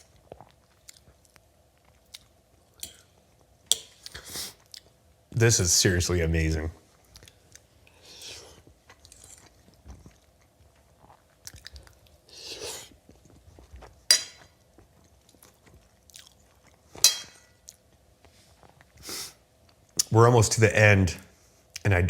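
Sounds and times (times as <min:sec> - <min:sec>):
close-up chewing: 0:00.0 - 0:02.4, 0:07.1 - 0:17.0.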